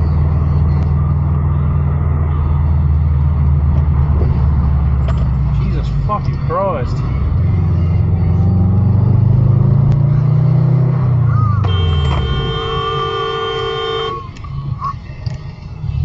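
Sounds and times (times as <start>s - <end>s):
car engine accelerating: 0.0s - 16.0s
car horn: 11.6s - 14.4s.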